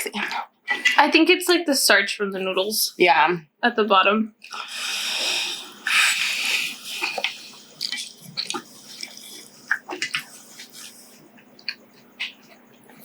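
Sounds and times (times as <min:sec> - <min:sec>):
noodles slurped: 0:04.4 - 0:13.0
wet chewing and mouth smacks: 0:04.4 - 0:13.0.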